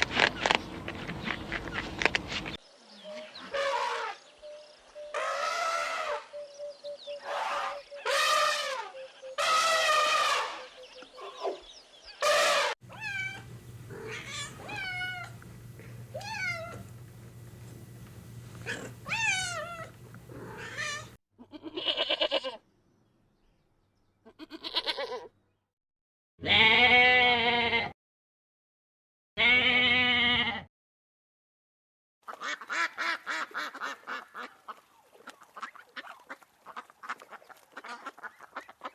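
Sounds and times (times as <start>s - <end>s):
wavering bleats: 12.3s - 17.5s, 18.2s - 22.6s, 26.4s - 27.9s, 29.4s - 30.7s
gliding meow-like animal cries: 12.6s - 15.4s, 18.7s - 22.6s.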